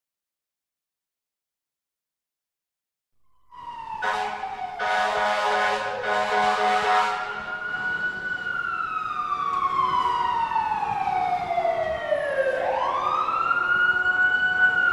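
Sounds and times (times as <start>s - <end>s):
fire truck siren wailing: 3.4s - 14.9s
loud horn blasts: 4.0s - 7.6s.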